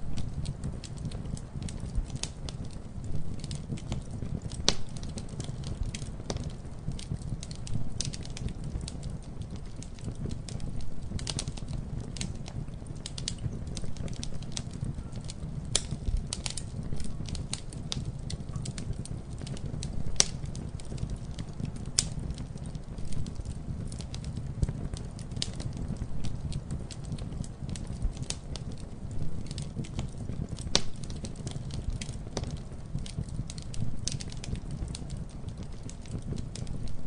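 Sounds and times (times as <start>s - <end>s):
campfire crackling: 0.0s - 37.0s.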